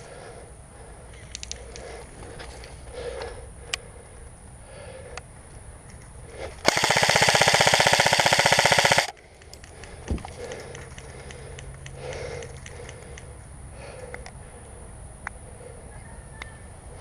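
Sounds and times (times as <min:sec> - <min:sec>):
airsoft gun full-auto burst: 0:06.6 - 0:09.1.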